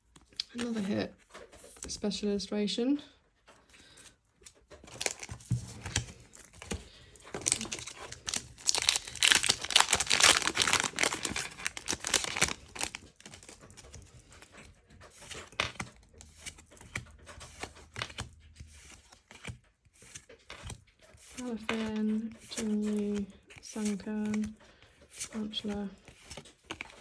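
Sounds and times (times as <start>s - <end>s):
foil wrapper crinkling and tearing: 4.8s - 14.5s.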